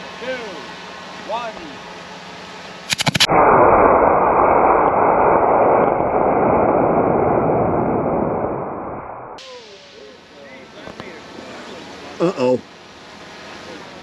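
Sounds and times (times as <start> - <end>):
rocket motor igniting crackles: 2.9 - 10.2
rocket thrust roar: 2.9 - 10.4.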